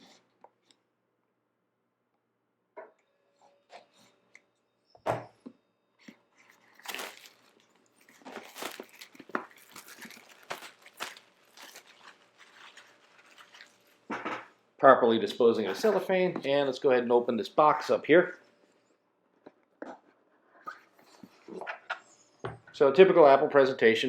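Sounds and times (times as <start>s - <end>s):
plastic wrap crinkling and tearing: 6.4s - 14.1s.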